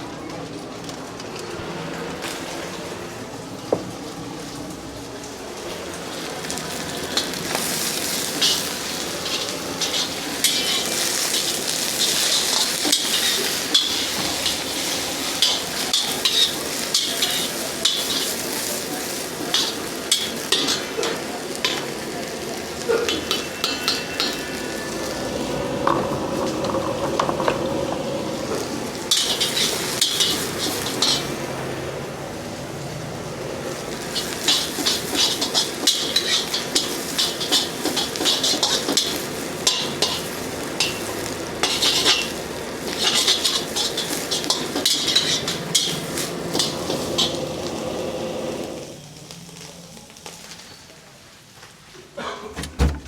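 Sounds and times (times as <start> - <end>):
food sizzling in wok: 4.0 - 51.5
metal ladle clanking on pan: 23.0 - 24.5.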